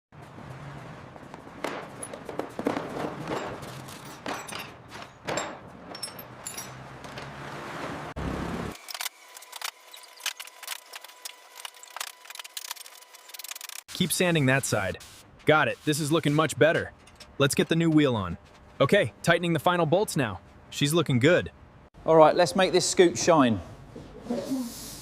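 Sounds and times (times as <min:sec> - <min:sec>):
metal tools clinking and scraping: 0:01.9 - 0:07.3, 0:16.8 - 0:18.7.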